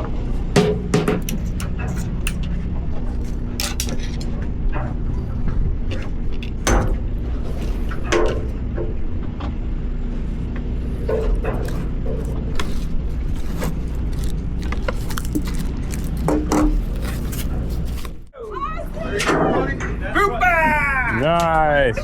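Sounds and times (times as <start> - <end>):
boat machinery hum: 0.0 - 22.0.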